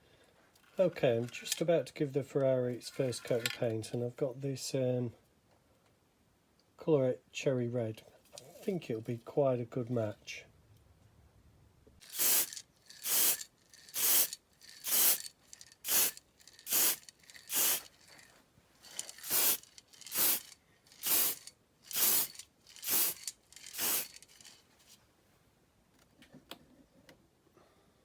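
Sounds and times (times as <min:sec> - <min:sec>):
spray paint can hissing: 0:12.0 - 0:18.0, 0:18.9 - 0:24.6.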